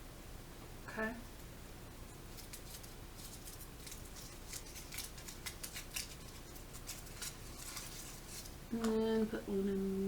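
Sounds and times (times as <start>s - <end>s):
crinkly wrapper crackling: 2.2s - 9.3s.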